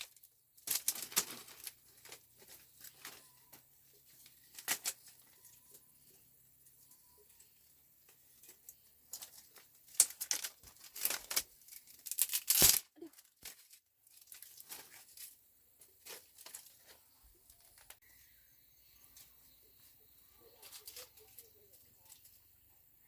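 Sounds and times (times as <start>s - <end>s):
crinkling and tearing: 9.4s - 18.0s.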